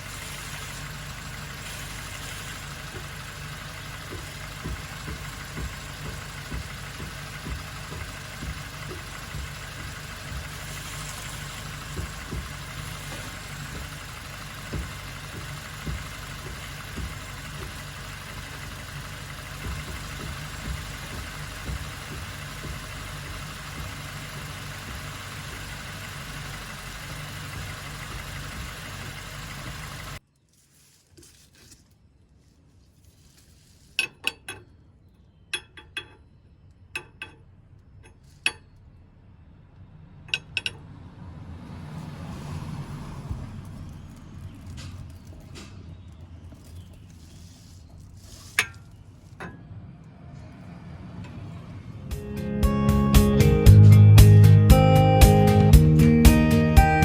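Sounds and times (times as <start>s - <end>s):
car engine droning: 0.0s - 30.2s, 38.1s - 57.0s
irregular knocks and rattles: 0.0s - 30.2s.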